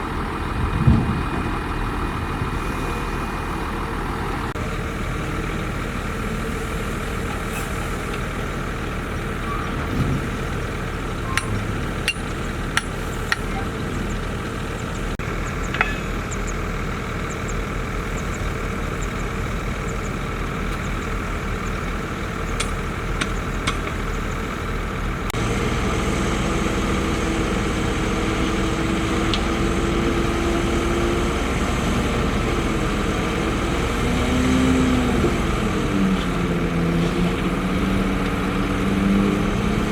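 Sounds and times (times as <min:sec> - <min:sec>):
heavy diesel machinery running: 0:00.0 - 0:39.9
sharp metallic clanks: 0:09.6 - 0:14.4.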